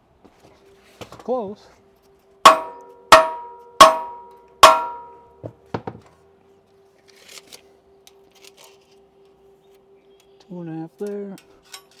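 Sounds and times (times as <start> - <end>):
hammer striking steel: 2.5 - 5.2.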